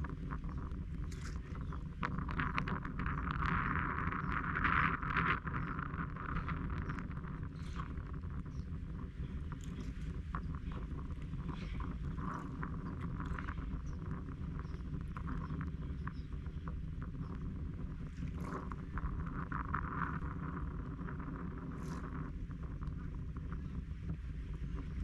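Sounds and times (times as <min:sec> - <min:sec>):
water splashing and clicking: 0:00.0 - 0:17.4
steady low rumble: 0:00.0 - 0:25.0.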